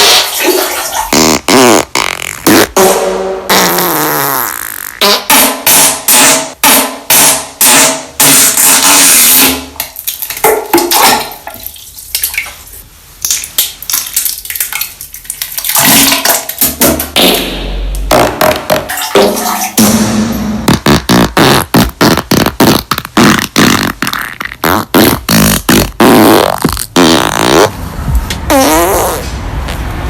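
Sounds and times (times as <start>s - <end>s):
wet farts: 0.0s - 6.4s, 7.1s - 11.7s, 15.6s - 27.7s, 28.5s - 29.3s.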